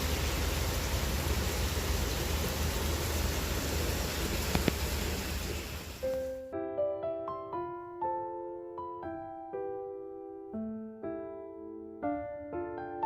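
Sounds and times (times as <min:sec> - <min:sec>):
steady hissing noise: 0:00.0 - 0:06.4
gentle piano music: 0:06.0 - 0:13.0.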